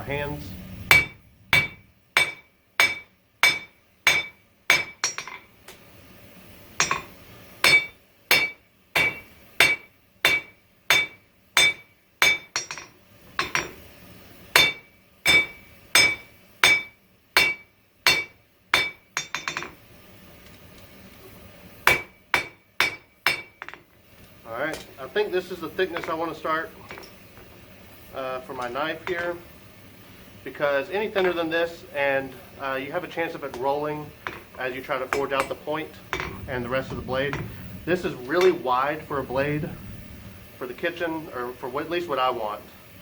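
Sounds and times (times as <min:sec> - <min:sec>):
hammer striking steel on anvil: 0:00.9 - 0:05.5, 0:06.8 - 0:13.8, 0:14.6 - 0:19.8, 0:21.9 - 0:23.8, 0:25.9 - 0:27.5, 0:33.5 - 0:36.4.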